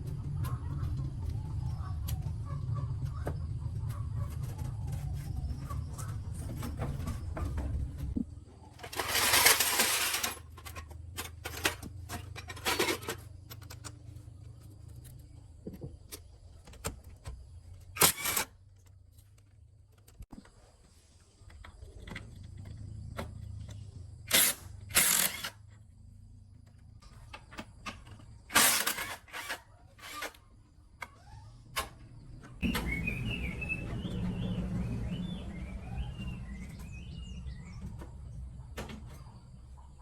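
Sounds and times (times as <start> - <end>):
steady low rumble: 32.5 - 39.8.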